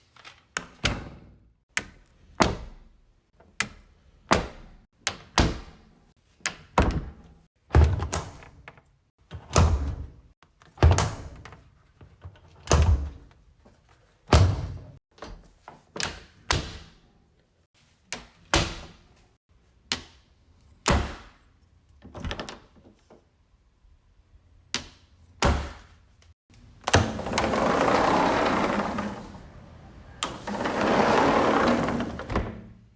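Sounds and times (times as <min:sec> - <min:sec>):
doors opening and shutting: 0:26.6 - 0:32.9.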